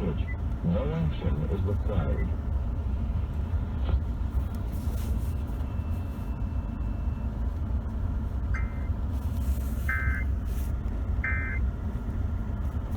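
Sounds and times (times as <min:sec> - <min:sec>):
two-tone digital bursts: 0:09.9 - 0:10.2, 0:11.2 - 0:11.6.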